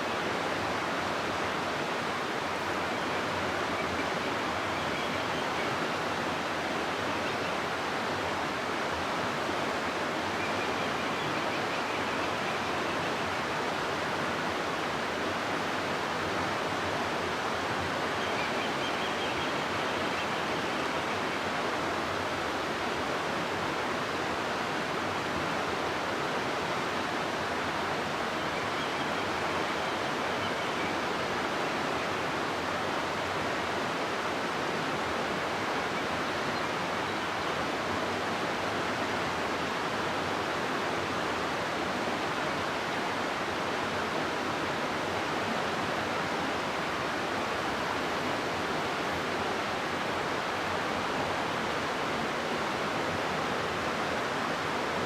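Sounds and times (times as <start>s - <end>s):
river water rushing over rocks: 19.6s - 55.0s.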